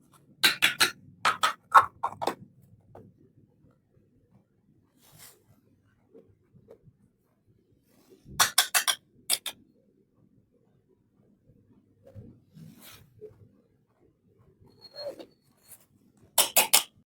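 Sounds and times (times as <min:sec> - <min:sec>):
sharp clicks of toy pieces: 0:00.4 - 0:02.4, 0:08.4 - 0:09.6, 0:16.4 - 0:17.0
faint rubbing of toy pieces: 0:04.9 - 0:08.5.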